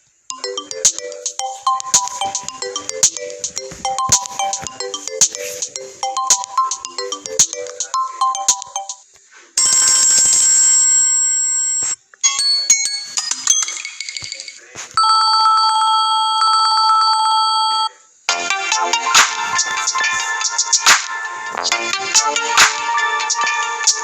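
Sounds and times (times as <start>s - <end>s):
electronic ringtone melodies: 0.3s - 9.0s
trilling ringtone chord: 0.3s - 9.0s.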